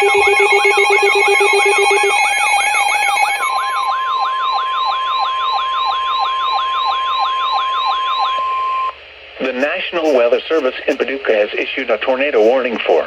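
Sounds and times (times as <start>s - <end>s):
rapidly pulsing low tone: 0.0s - 2.9s
electronic falling sweep tone: 0.0s - 3.9s
high steady tones: 0.0s - 3.9s
steady single-pitch alarm tone: 0.0s - 10.7s.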